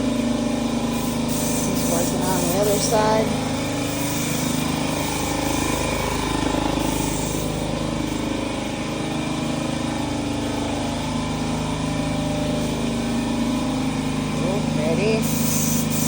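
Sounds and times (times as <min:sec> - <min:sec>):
motor humming: 0:00.0 - 0:16.0
spray can hissing: 0:01.0 - 0:03.2, 0:06.8 - 0:07.6, 0:15.2 - 0:16.0.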